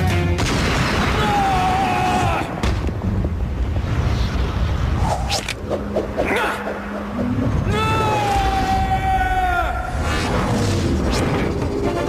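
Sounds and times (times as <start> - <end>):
deep rumble: 3.3 - 9.0
quick whooshing sweeps: 4.1 - 7.8.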